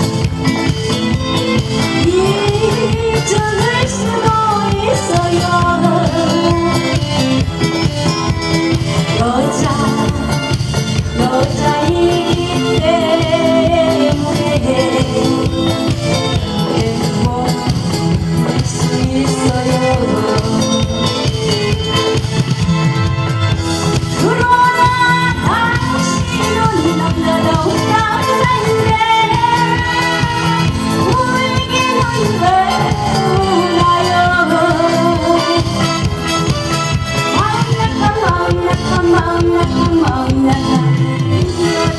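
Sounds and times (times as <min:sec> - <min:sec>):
instrumental accompaniment with beat: 0:00.0 - 0:41.9
person singing: 0:09.2 - 0:10.4, 0:11.2 - 0:21.4, 0:24.2 - 0:35.9, 0:37.4 - 0:41.9.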